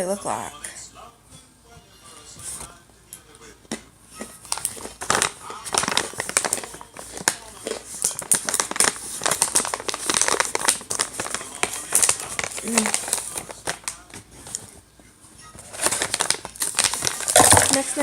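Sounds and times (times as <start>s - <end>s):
snack bag crinkling: 4.2s - 14.6s, 15.6s - 18.0s.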